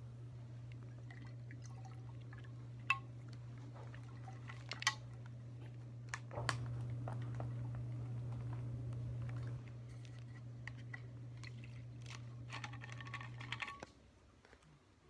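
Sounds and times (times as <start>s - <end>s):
low hum: 0.0s - 13.9s
liquid dripping: 0.3s - 9.8s.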